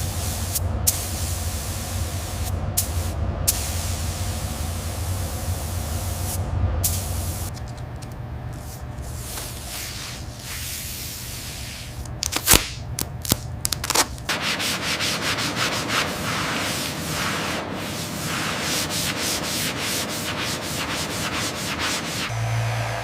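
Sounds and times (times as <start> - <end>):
sanding rubbing: 14.3 - 22.3.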